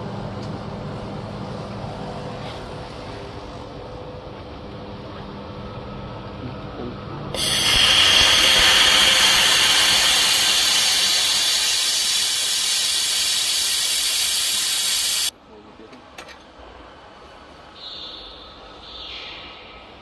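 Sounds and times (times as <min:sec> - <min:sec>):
low machine hum: 0:00.0 - 0:15.3
laser welding machine hiss: 0:07.4 - 0:15.3.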